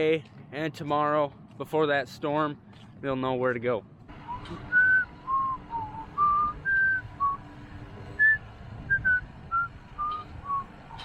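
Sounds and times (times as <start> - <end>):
low steady hum: 4.0 - 11.0
person whistling a tune: 4.3 - 7.4, 8.2 - 11.0.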